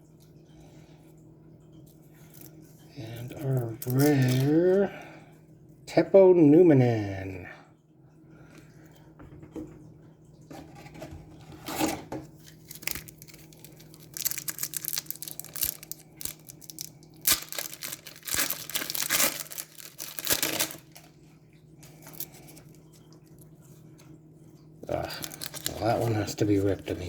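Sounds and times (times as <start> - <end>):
faint steady hum: 0.0 - 27.0
wrapper tearing and crinkling: 3.8 - 4.6, 12.4 - 21.2, 21.8 - 22.7, 25.0 - 26.4.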